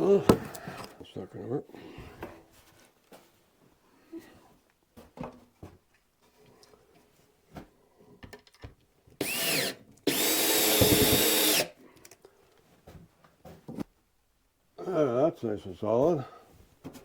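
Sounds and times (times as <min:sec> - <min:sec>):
knocks and handling of wood: 0:00.0 - 0:01.1, 0:04.9 - 0:08.9
power drill driving screws: 0:09.2 - 0:11.8.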